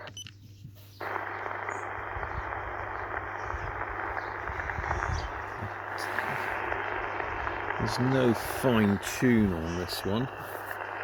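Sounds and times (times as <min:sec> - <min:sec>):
radio static hiss: 0:00.8 - 0:11.0.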